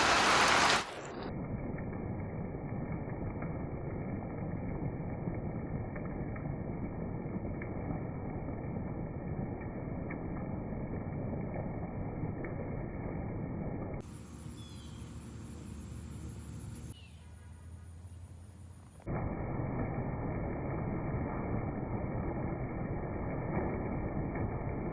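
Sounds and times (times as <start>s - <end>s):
heavy rain pouring: 0.0s - 1.2s.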